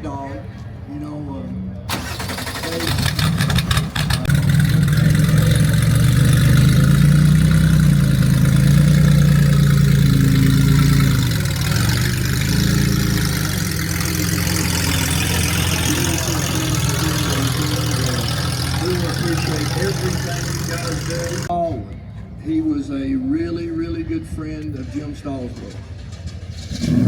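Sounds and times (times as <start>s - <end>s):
engine starting clicks: 1.9s - 4.3s
car engine idling: 1.9s - 21.5s.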